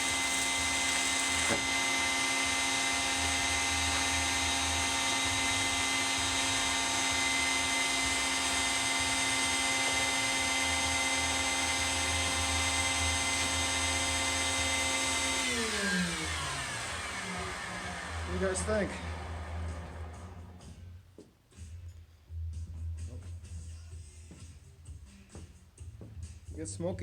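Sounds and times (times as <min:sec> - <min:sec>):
shop vac motor whining: 0:00.0 - 0:20.7.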